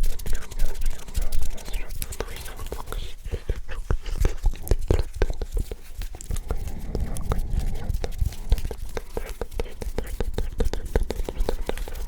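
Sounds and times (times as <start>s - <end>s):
soft rustling of hands: 0.0s - 12.0s
crisp clicks of hands: 0.1s - 3.0s, 8.0s - 12.0s.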